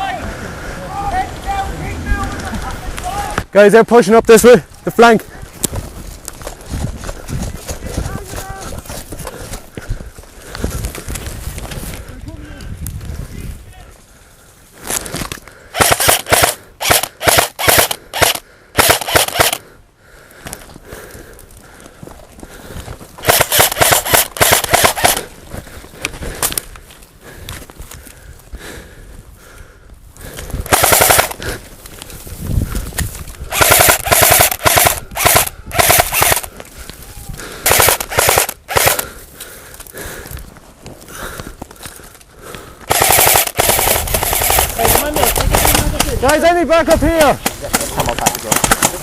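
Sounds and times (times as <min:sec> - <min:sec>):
airsoft gun firing bursts: 0:15.7 - 0:19.6, 0:23.2 - 0:25.3, 0:30.7 - 0:31.5, 0:33.5 - 0:36.5, 0:37.6 - 0:39.1, 0:42.9 - 0:46.2, 0:47.4 - 0:49.0.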